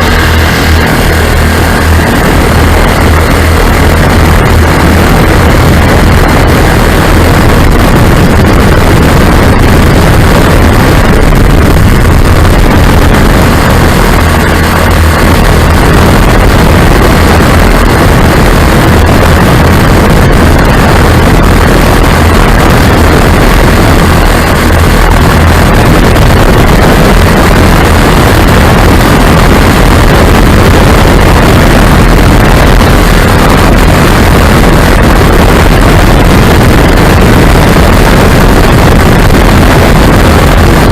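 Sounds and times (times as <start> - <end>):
small aircraft engines running: 0.0 - 40.9
wind noise on microphone: 0.0 - 40.9.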